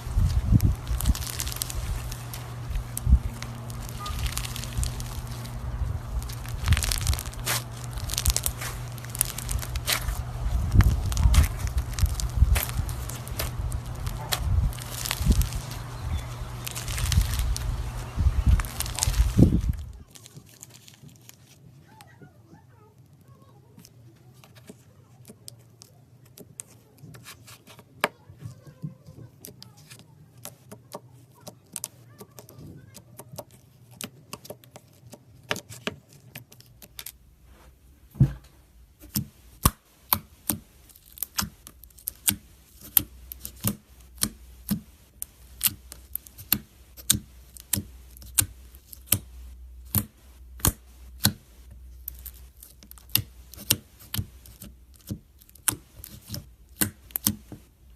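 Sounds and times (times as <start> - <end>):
slime clicking and popping: 0.2 - 21.2, 39.0 - 57.7.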